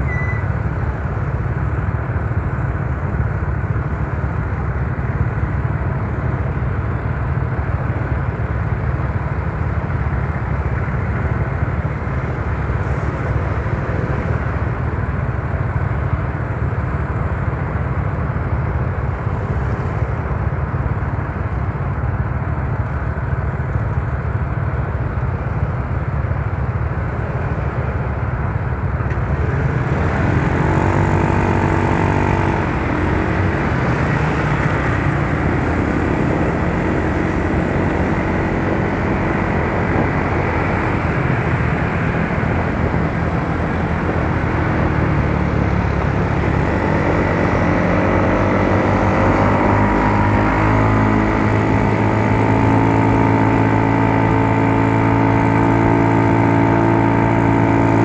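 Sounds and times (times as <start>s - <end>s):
scooter engine running: 28.7s - 58.0s.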